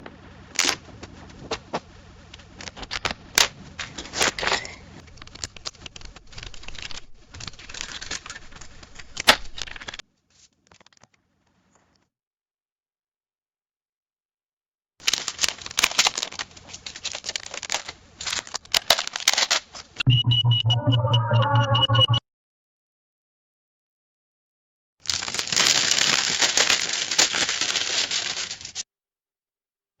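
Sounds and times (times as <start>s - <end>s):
paper banknotes crinkling: 5.1s - 10.0s, 15.0s - 19.9s, 25.0s - 28.8s.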